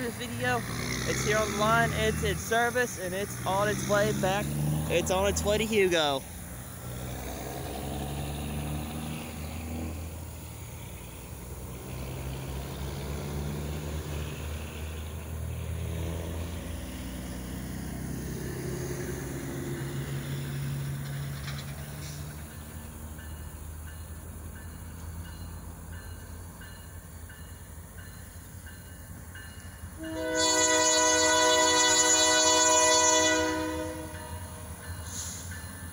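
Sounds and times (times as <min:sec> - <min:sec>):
diesel locomotive engine rumble: 0:00.0 - 0:35.9
locomotive air horn chord: 0:30.0 - 0:35.4.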